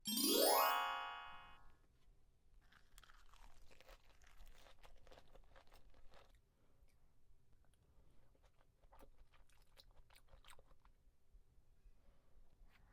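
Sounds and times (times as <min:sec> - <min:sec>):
person chewing crunchy food: 0:02.7 - 0:06.4.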